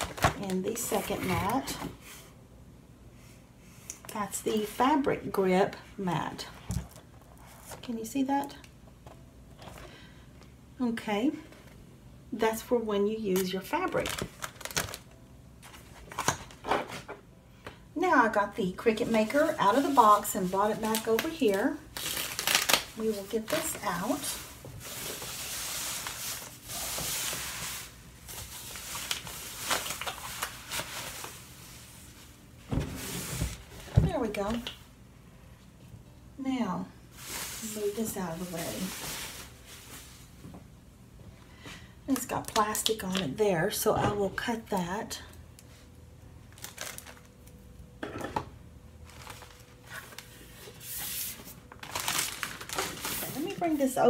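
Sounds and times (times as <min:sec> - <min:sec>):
packaging rustling: 0:00.0 - 0:01.8, 0:13.9 - 0:17.1, 0:19.0 - 0:33.9, 0:37.2 - 0:40.3, 0:46.5 - 0:47.6, 0:49.0 - 0:53.8.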